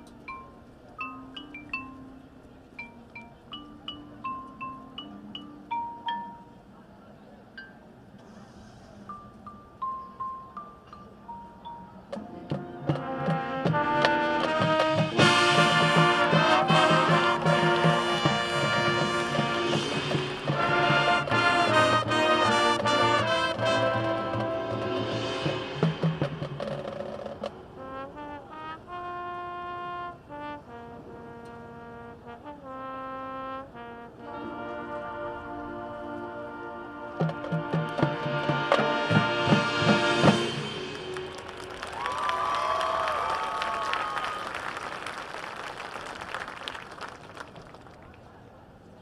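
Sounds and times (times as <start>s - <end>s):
mallet percussion tone: 0.0s - 6.8s, 9.1s - 13.5s
percussion hits: 12.1s - 27.6s, 37.2s - 42.3s
brass section chords: 12.8s - 26.6s, 27.8s - 41.8s.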